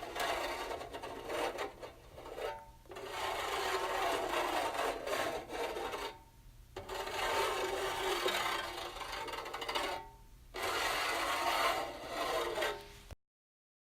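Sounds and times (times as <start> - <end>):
fingernails scraping metal: 0.0 - 6.2, 6.8 - 13.1
thin squeak: 6.8 - 13.1.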